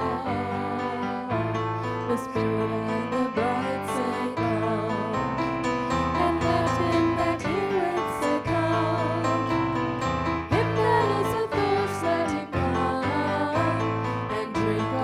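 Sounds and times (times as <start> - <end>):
voices singing: 0.0 - 15.0.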